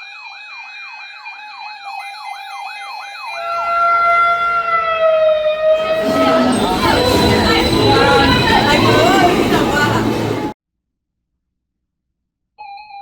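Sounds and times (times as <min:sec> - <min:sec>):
electronic siren yelping: 0:02.7 - 0:09.0.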